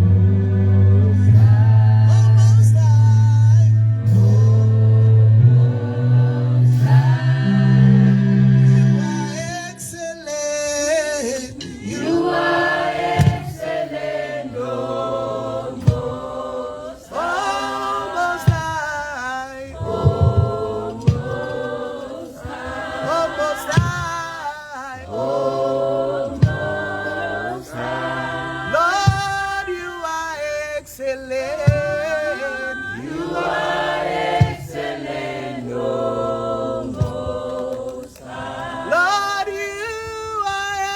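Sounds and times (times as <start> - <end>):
group singing gospel song: 0.0 - 9.4, 11.2 - 40.9
low sustained bass note: 0.0 - 9.4.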